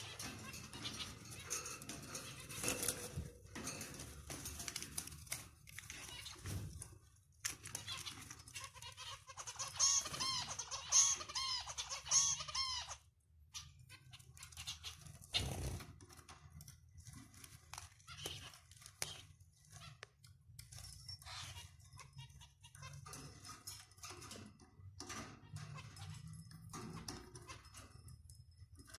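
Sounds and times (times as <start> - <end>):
cockatiels chirping: 0.0 - 3.0, 7.7 - 15.8, 18.0 - 20.2, 21.0 - 23.2.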